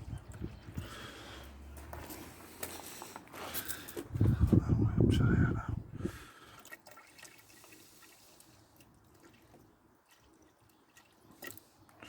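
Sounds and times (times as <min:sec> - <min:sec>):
water trickling into a tank: 0:06.3 - 0:12.0
light drips and ticks: 0:06.5 - 0:12.0.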